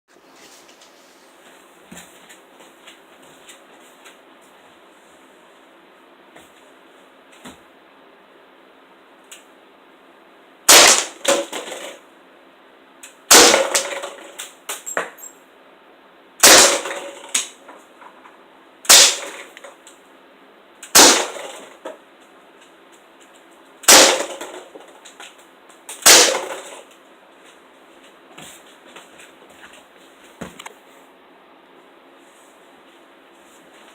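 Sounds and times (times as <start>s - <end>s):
bb gun shots: 10.7s - 11.8s, 13.3s - 14.2s, 16.4s - 17.5s, 18.9s - 19.6s, 20.9s - 21.7s, 23.8s - 24.7s, 26.0s - 26.8s.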